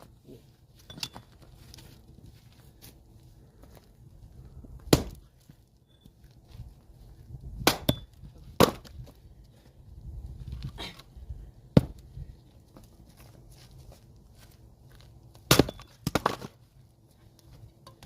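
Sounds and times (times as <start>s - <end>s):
axe chopping firewood: 4.8s - 5.3s, 7.6s - 9.0s, 11.7s - 12.1s, 15.3s - 16.6s.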